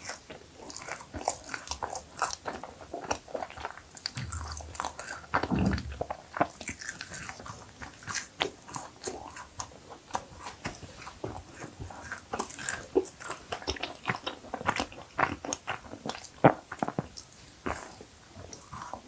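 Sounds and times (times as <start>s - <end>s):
low muffled sounds: 4.2s - 6.1s.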